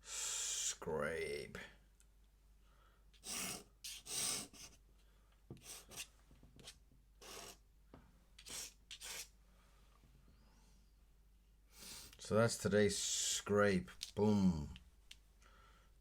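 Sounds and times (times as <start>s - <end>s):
pen scratching on paper: 3.2s - 4.8s, 5.6s - 7.6s, 8.4s - 9.3s.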